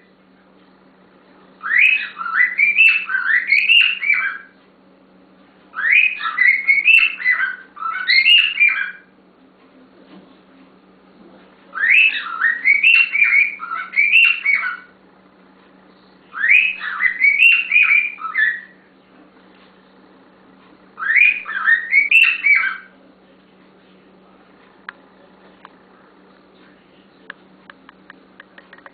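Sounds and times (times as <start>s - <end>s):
pet bird whistling song: 1.6s - 4.6s, 5.7s - 9.1s, 11.7s - 15.0s, 15.9s - 18.9s, 21.0s - 22.9s.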